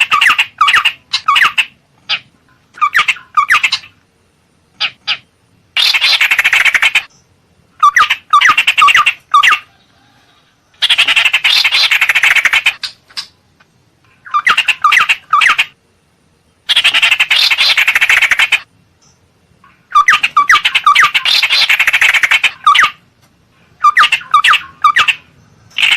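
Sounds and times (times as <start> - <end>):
bird harsh chattering: 0.0 - 4.0, 4.8 - 7.1, 7.8 - 9.7, 10.8 - 13.4, 14.2 - 15.8, 16.6 - 18.7, 19.8 - 23.0, 23.8 - 25.9.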